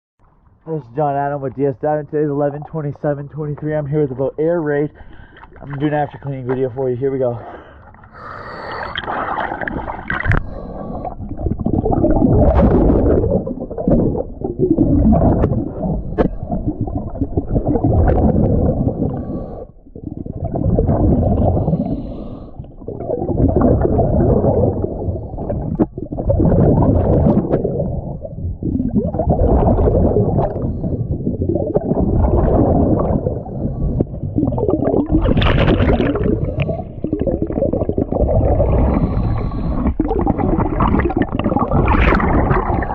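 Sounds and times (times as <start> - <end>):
exhaled bubbles rushing: 3.4 - 42.9
diver breathing through regulator: 4.9 - 5.6, 7.4 - 11.6, 18.7 - 20.0, 21.4 - 22.9, 24.6 - 26.0, 30.4 - 31.5, 33.2 - 34.6, 36.0 - 37.7, 38.4 - 42.9.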